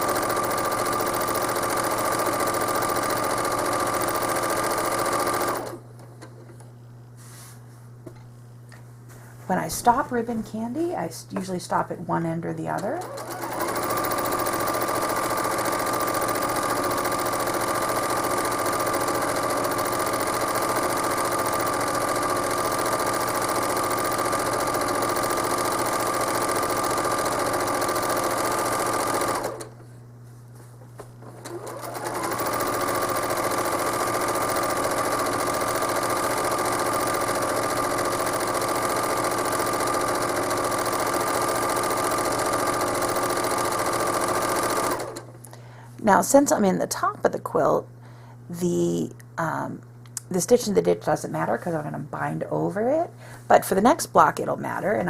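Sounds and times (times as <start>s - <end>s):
sewing machine running: 0.0s - 5.8s, 12.8s - 29.8s, 31.2s - 45.4s.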